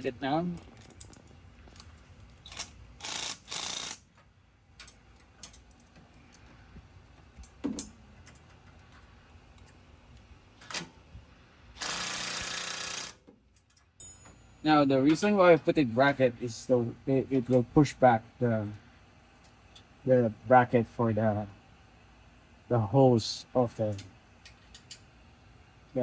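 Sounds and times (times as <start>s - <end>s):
power tool tightening bolts: 2.4s - 4.0s, 11.8s - 13.2s.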